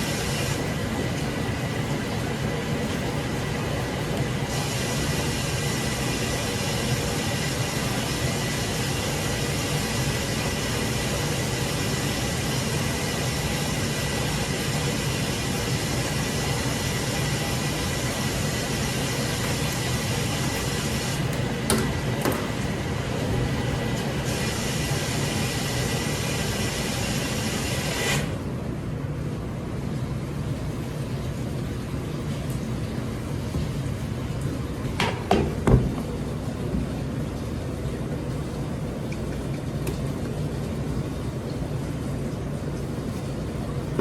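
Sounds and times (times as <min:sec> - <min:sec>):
machine running with high whine: 0:00.0 - 0:28.6.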